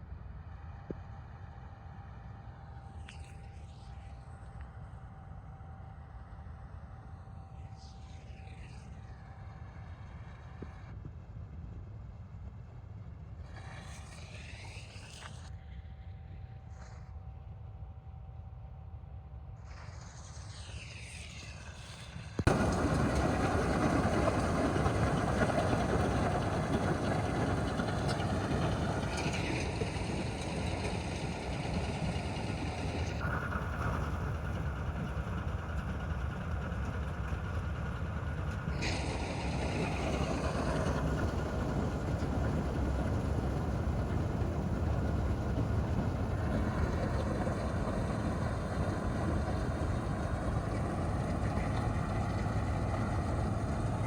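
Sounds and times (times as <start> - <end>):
combine harvester running: 19.7 - 54.0.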